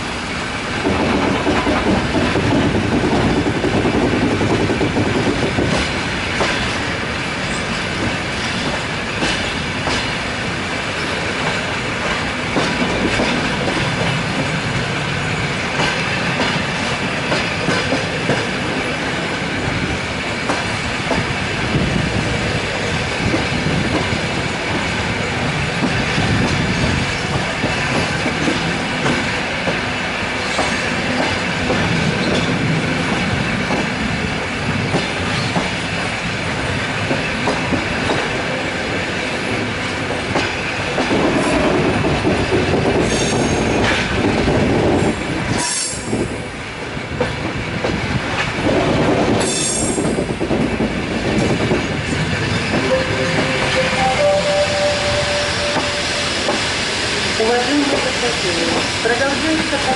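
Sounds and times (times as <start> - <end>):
train wheels clattering on rails: 0.0 - 54.1, 55.6 - 59.9
short high-pitched bursts: 52.8 - 57.0.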